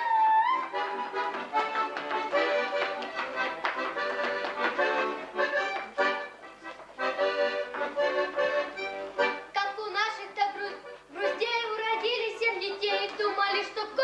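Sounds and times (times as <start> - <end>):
accordion playing lively tune: 0.0 - 14.0.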